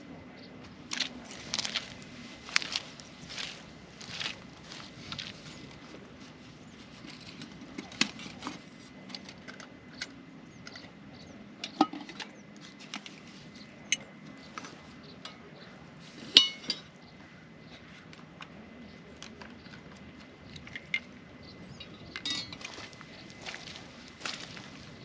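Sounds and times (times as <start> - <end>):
metal cookware clinks and knocks: 16.4 - 16.9, 22.2 - 22.7
sharp ringing metallic clink: 16.4 - 16.9, 22.2 - 22.7.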